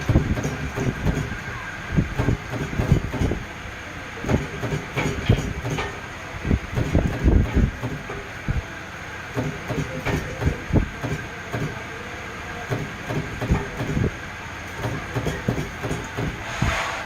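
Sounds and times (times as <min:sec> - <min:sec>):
mechanical hum: 0:00.0 - 0:17.0
sharp knocks and clicks: 0:14.8 - 0:16.4
rushing noise: 0:16.3 - 0:17.0.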